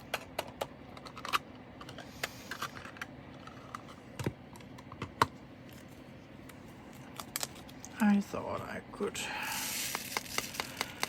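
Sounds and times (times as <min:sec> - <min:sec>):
small plastic bags clicking: 0:09.9 - 0:11.0.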